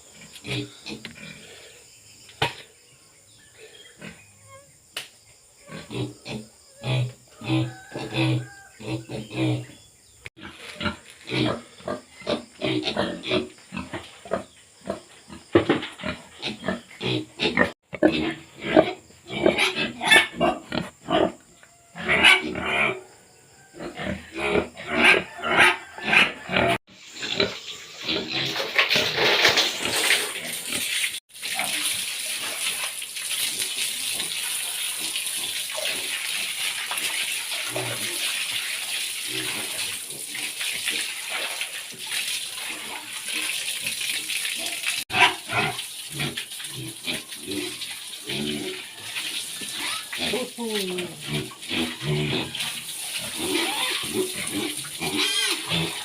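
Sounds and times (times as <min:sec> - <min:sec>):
pigs grunting and squealing: 0:00.1 - 0:01.8, 0:03.6 - 0:04.7, 0:05.6 - 0:32.9, 0:33.5 - 0:38.3, 0:39.2 - 0:41.6, 0:44.6 - 0:56.0
water splashing: 0:27.6 - 0:56.0.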